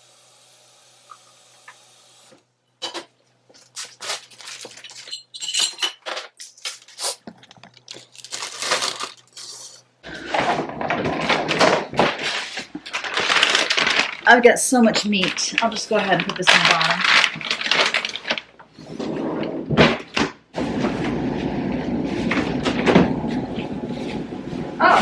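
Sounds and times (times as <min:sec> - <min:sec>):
plastic bags crinkling: 0:03.5 - 0:18.7
food packages knocking: 0:10.2 - 0:18.5.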